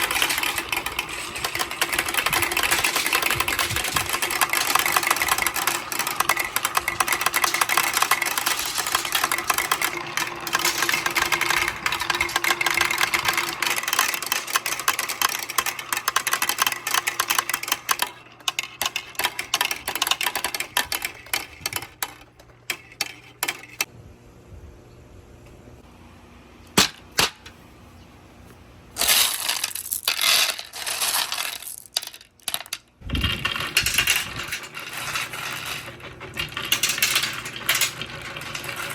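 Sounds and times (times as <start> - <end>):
marbles clattering down marble run: 0.0 - 23.9, 29.0 - 38.9.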